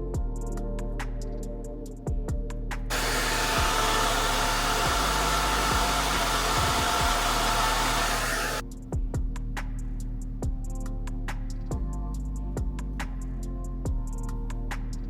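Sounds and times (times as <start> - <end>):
background music with a beat: 0.0 - 15.0
hair dryer blowing: 2.9 - 8.6.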